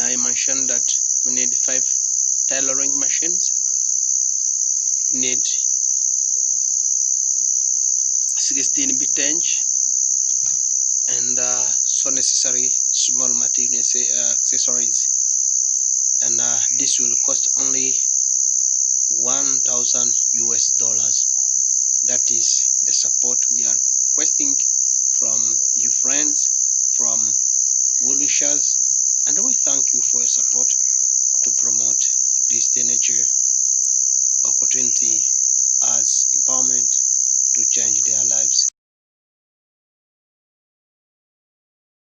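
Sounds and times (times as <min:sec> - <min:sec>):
people talking indistinctly: 0:00.0 - 0:01.9, 0:02.5 - 0:03.7, 0:05.1 - 0:05.6, 0:08.3 - 0:09.6, 0:10.3 - 0:15.0, 0:16.2 - 0:18.0, 0:19.1 - 0:27.4, 0:28.0 - 0:33.3, 0:34.4 - 0:38.7.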